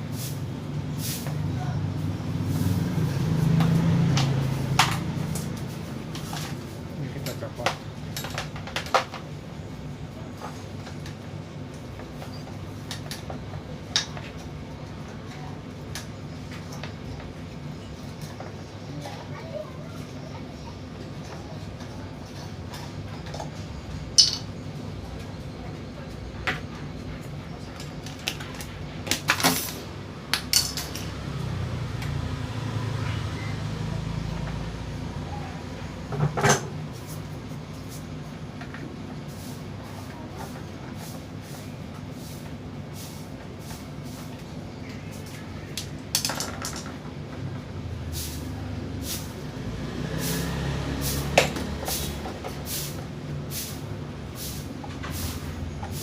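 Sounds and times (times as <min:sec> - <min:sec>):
fan parts clicking and knocking: 0:03.2 - 0:19.2, 0:21.0 - 0:32.7, 0:35.8 - 0:39.3, 0:43.3 - 0:47.9, 0:49.4 - 0:53.4.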